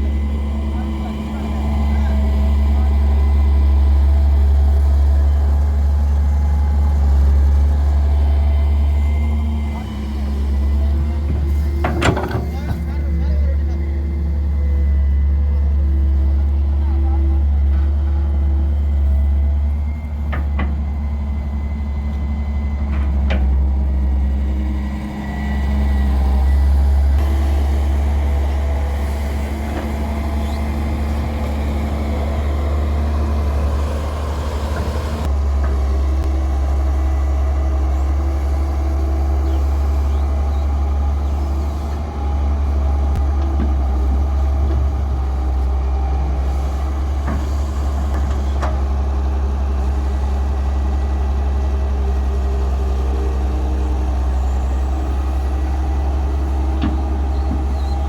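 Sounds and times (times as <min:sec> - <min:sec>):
heavy diesel engines under load: 0:00.0 - 0:58.0.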